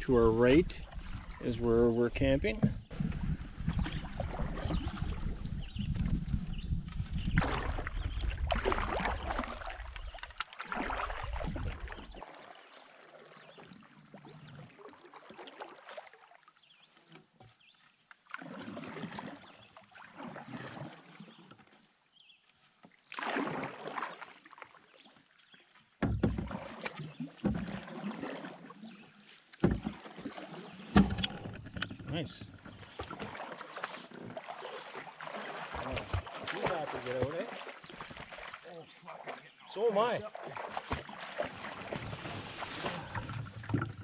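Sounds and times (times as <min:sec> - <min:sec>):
paddle splashing in water: 0:00.8 - 0:44.0
wind on microphone: 0:02.6 - 0:10.2.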